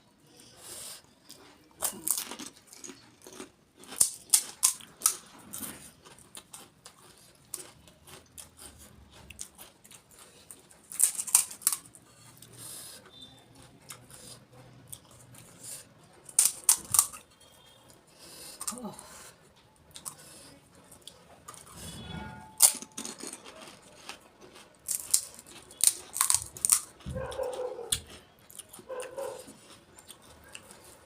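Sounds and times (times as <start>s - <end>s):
crisp shells crunching while chewed: 1.2s - 12.5s, 16.2s - 17.5s, 22.6s - 31.0s.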